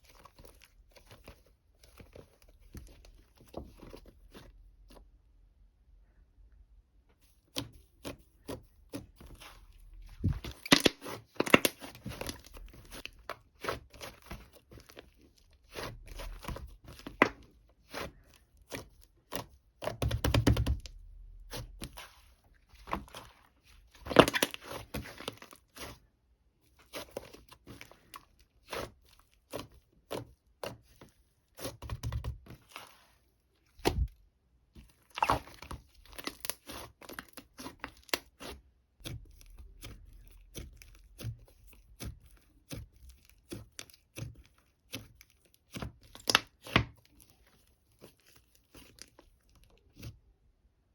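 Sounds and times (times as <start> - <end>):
crinkling and tearing: 9.2 - 19.4, 20.8 - 26.0, 34.8 - 50.1.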